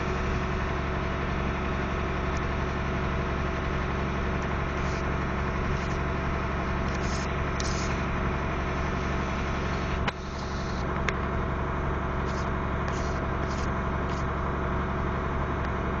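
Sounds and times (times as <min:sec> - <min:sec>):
heavy vehicle engine running: 0:00.0 - 0:16.0.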